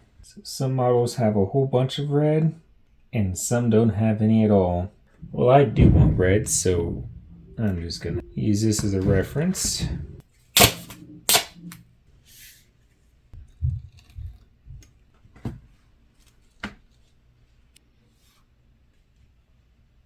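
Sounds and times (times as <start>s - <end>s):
duct tape ripping: 10.6s - 11.6s
tape hissing pull: 10.6s - 11.8s.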